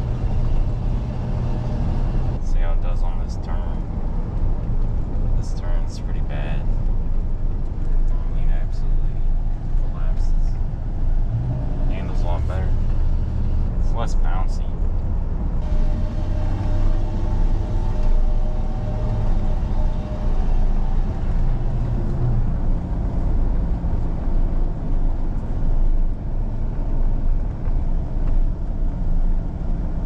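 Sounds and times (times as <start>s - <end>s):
faint engine tone: 0.0s - 3.8s, 8.0s - 14.8s, 15.6s - 26.1s
engine and tyre rumble: 0.0s - 30.0s.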